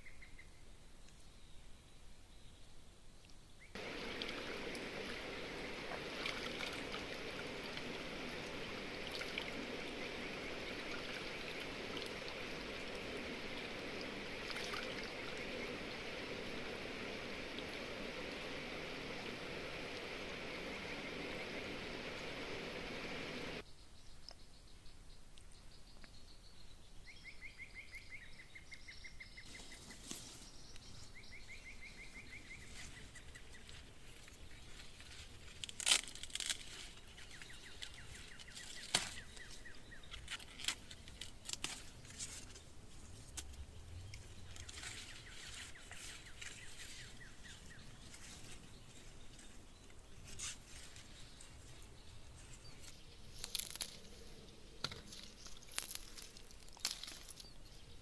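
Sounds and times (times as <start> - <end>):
rustling and tearing: 33.6 - 43.6, 50.2 - 57.5.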